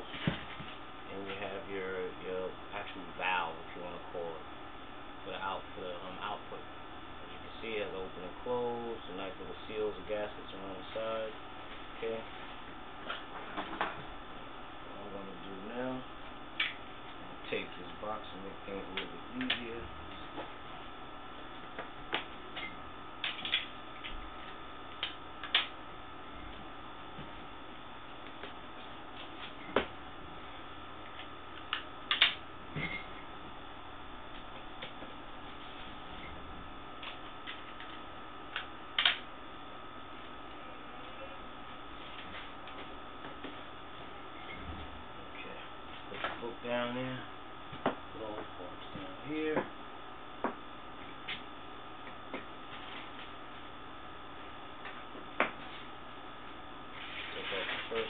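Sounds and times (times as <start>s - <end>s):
faint steady hum: 0.0s - 58.0s.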